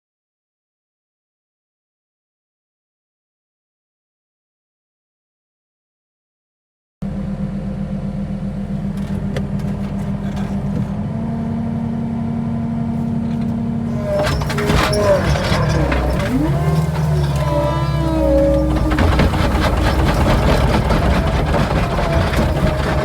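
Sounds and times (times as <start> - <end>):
diesel engine droning: 7.0 - 23.0.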